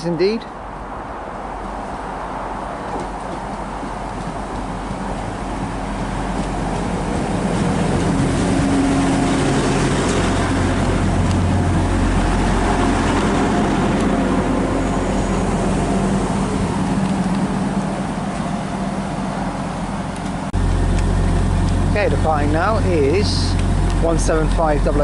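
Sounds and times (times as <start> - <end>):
road traffic noise: 0.0 - 25.0
train engine idling: 2.7 - 25.0.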